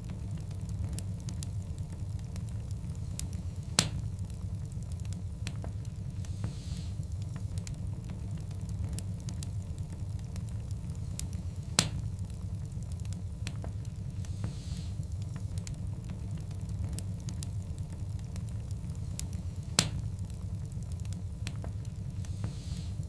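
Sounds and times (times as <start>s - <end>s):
faint hiss from fire: 0.0s - 23.0s
wood fire crackling: 0.0s - 23.0s
sharp loud pops from fire: 3.7s - 4.1s, 11.7s - 12.1s, 19.7s - 20.1s.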